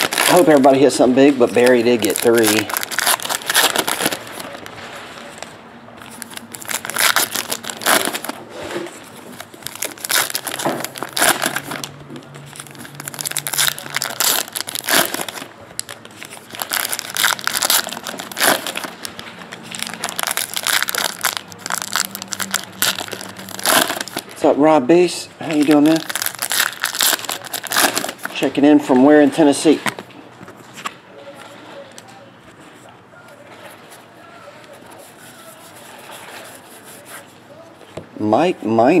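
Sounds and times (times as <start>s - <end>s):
card pack wrappers tearing: 0.0s - 4.7s, 6.0s - 8.4s, 9.1s - 11.9s, 12.5s - 24.4s, 25.5s - 28.6s.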